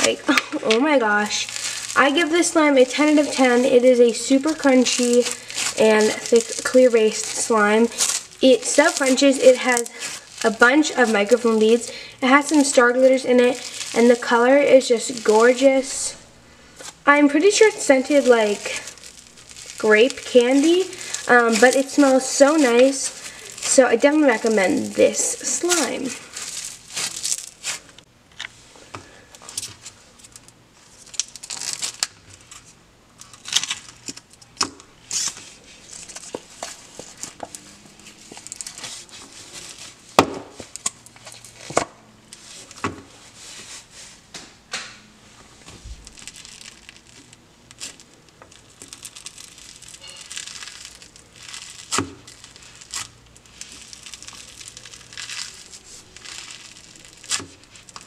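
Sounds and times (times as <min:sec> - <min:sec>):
crunchy slime squeezed by hand: 0:17.5 - 0:25.0, 0:45.8 - 0:58.0.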